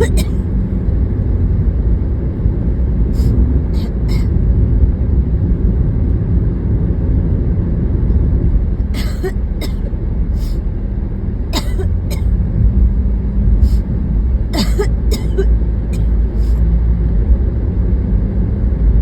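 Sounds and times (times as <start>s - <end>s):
woman coughing: 0.0s - 0.4s, 3.8s - 4.3s, 9.0s - 10.6s, 11.6s - 12.3s, 14.6s - 16.1s
car road and engine rumble: 0.0s - 19.0s.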